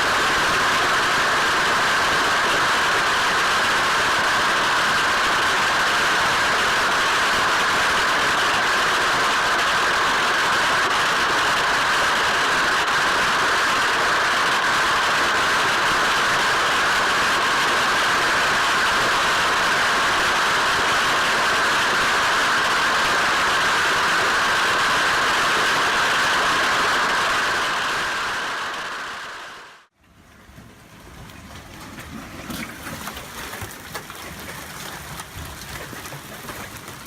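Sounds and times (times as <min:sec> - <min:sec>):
hailstones roaring: 0:00.0 - 0:29.4.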